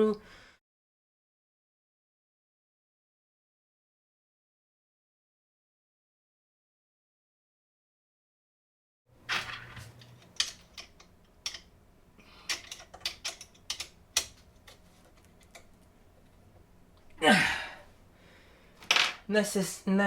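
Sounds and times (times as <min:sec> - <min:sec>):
metal parts clicking and tapping: 0:09.2 - 0:11.8, 0:12.4 - 0:15.9.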